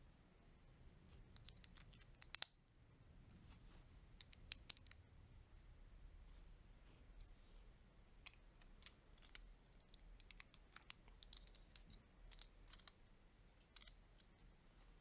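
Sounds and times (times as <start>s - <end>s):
lego pieces clicking: 1.4s - 2.5s, 8.2s - 13.0s, 13.7s - 14.3s.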